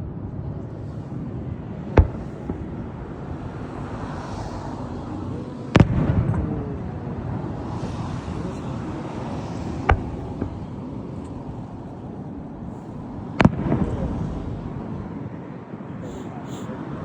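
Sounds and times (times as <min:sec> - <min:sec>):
rolling rumble: 0:00.0 - 0:15.2
outdoor background noise: 0:00.0 - 0:17.0
firework bang: 0:01.9 - 0:03.7, 0:05.8 - 0:07.0, 0:09.7 - 0:10.8, 0:13.4 - 0:14.8.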